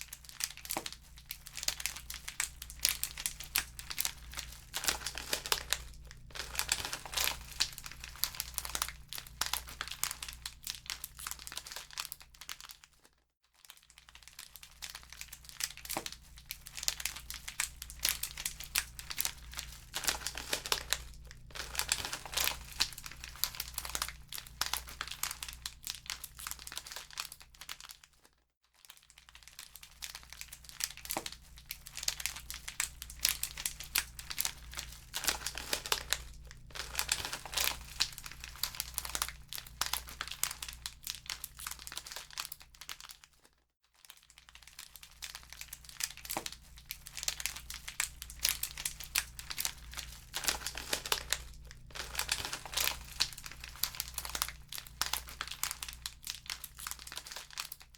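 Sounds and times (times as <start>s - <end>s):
wood fire crackling: 2.2s - 10.0s, 17.2s - 25.2s, 32.4s - 40.7s, 47.2s - 57.0s.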